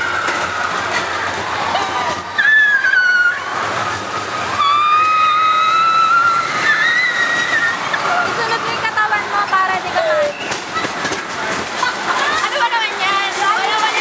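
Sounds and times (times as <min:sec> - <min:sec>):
people screaming on a ride: 0:00.0 - 0:09.3
ride rushing noise: 0:00.0 - 0:14.0.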